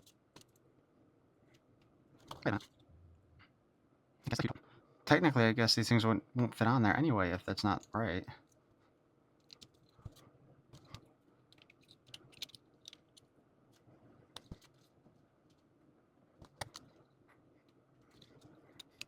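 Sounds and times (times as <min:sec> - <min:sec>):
plastic parts clicking and tapping: 0:02.2 - 0:02.8, 0:09.4 - 0:13.3, 0:14.3 - 0:14.9, 0:16.4 - 0:17.0, 0:18.1 - 0:19.0.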